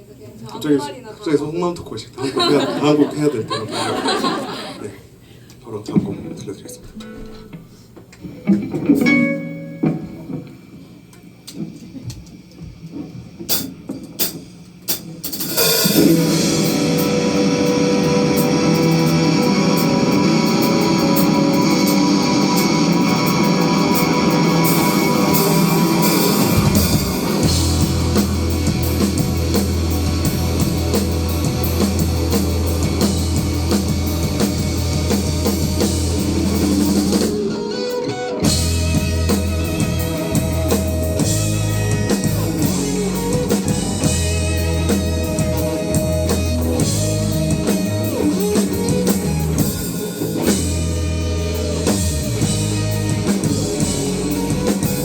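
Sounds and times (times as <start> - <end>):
electric guitars: 6.8 - 55.0
drum kit: 6.9 - 55.0
bass guitar: 15.5 - 55.0.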